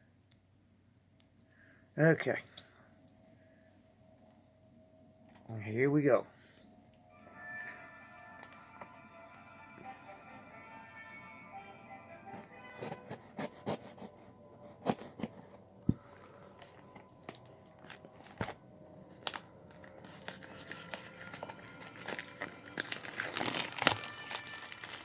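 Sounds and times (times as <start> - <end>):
plastic wrapping crinkling and tearing: 16.0 - 25.0.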